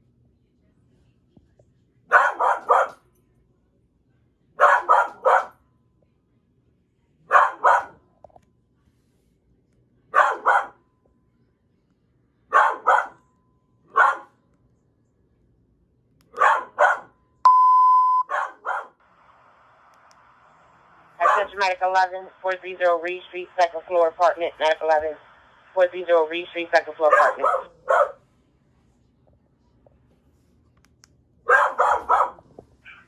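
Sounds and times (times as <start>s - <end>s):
dog barking: 2.1s - 3.0s, 4.6s - 5.6s, 7.3s - 8.0s, 10.1s - 10.8s, 12.5s - 13.3s, 13.9s - 14.4s, 16.3s - 17.2s, 18.2s - 19.0s, 21.2s - 21.6s, 27.0s - 28.2s, 31.5s - 33.0s
electronic beep: 17.5s - 18.3s.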